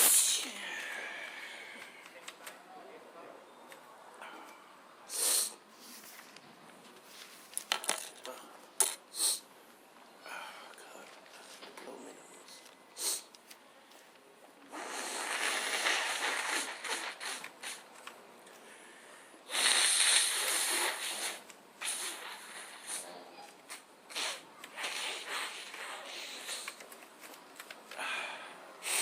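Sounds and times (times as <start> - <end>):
sniffs and breaths: 12.4 - 17.9, 18.5 - 27.0.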